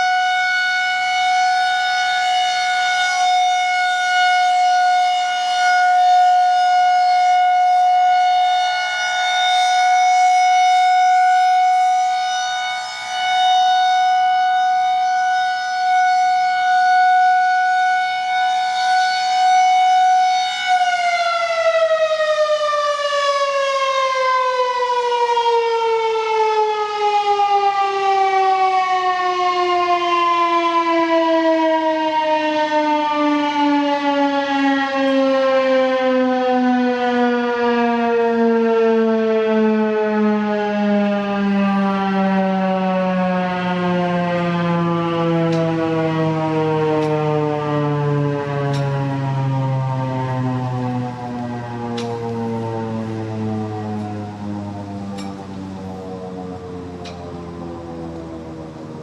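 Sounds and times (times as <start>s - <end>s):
rotating warning siren: 0.0s - 59.0s.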